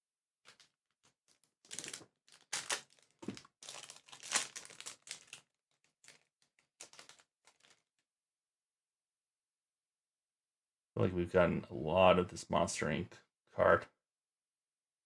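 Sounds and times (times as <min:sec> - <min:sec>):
foil wrapper crinkling: 0:01.3 - 0:07.9.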